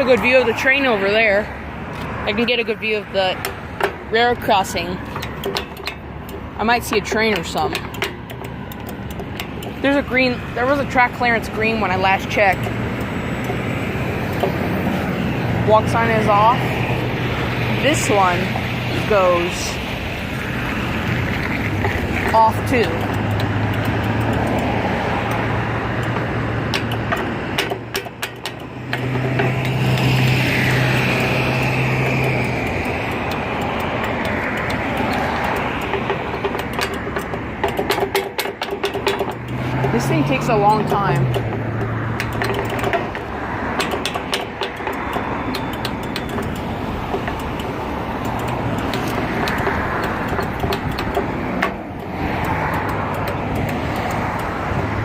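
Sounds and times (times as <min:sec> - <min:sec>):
vehicles passing: 0:00.0 - 0:55.0
sharp clicks: 0:01.9 - 0:19.1, 0:20.1 - 0:55.0.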